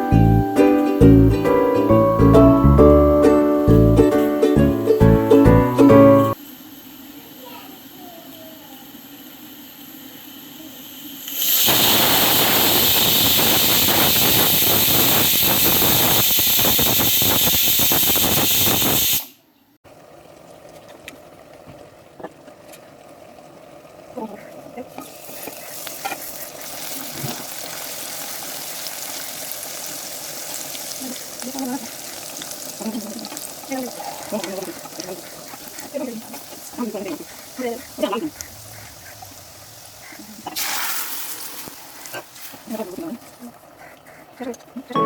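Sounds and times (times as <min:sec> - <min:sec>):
food sizzling in hot oil: 0:06.3 - 0:19.3, 0:25.0 - 0:43.1.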